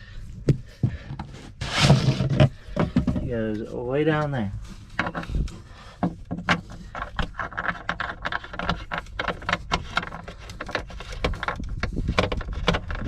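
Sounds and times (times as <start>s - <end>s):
scraping: 0.4s - 13.0s
clicks knocks and rattles: 4.9s - 13.0s.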